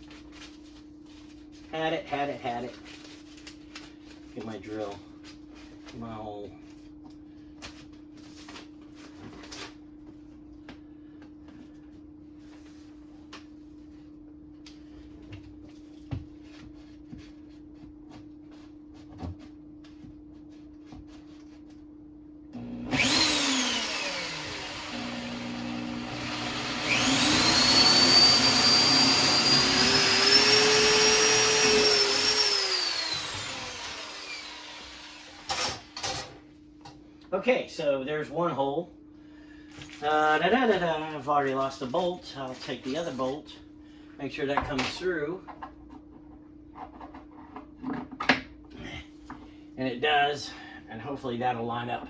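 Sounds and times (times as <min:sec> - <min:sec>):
power drill whining: 0:22.6 - 0:36.0.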